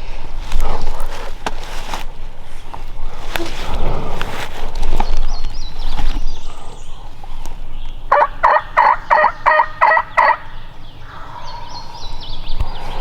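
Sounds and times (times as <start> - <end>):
turkey gobbling: 8.1 - 12.0.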